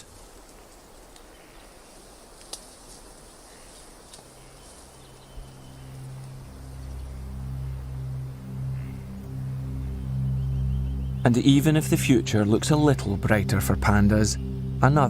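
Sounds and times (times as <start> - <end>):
soft outdoor hiss: 0.0 - 15.0
small ticks: 0.4 - 8.0
low music drone: 4.4 - 15.0.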